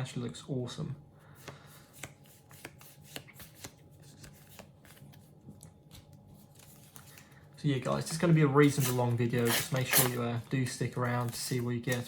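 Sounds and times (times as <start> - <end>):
stickers clicking and rustling: 7.9 - 12.0.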